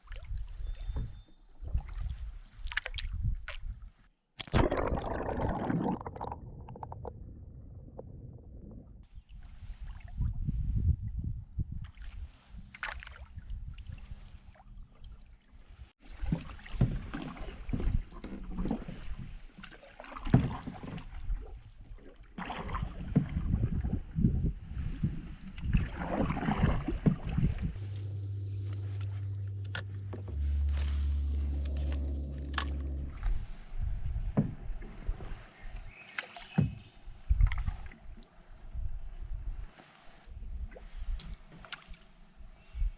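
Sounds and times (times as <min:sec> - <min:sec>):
paddle splashing in water: 0:11.8 - 0:15.1, 0:16.0 - 0:38.4, 0:39.7 - 0:42.2
steady hiss with low hum: 0:27.8 - 0:33.5.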